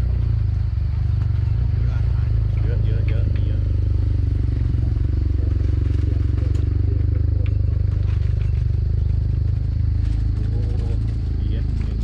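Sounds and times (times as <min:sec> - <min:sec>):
small engine running: 0:00.0 - 0:12.0
faint clattering ticks: 0:04.5 - 0:12.0.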